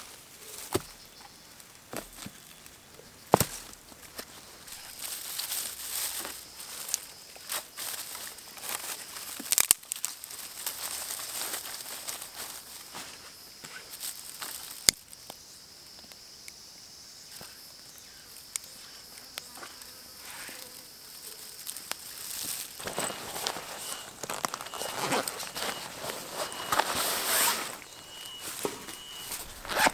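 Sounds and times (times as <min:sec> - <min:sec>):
insects droning: 0:00.1 - 0:29.9
close rustling and crinkling: 0:01.6 - 0:15.0, 0:19.6 - 0:29.9.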